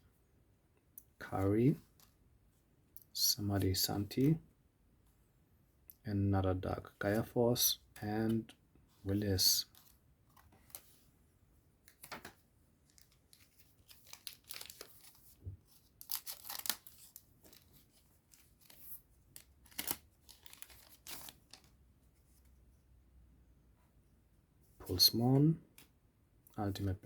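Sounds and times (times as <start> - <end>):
cards shuffling: 11.9 - 21.7
wrapper tearing and crinkling: 12.9 - 21.7.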